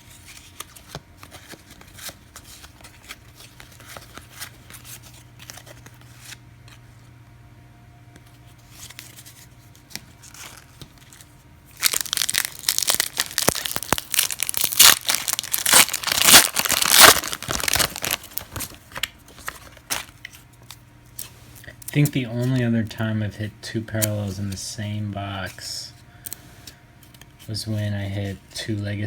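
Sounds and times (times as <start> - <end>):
wrapper being torn and crinkled: 10.2 - 20.3.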